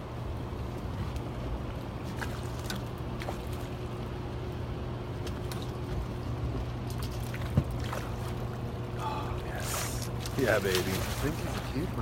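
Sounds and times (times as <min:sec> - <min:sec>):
boat motor humming: 0:00.0 - 0:12.0.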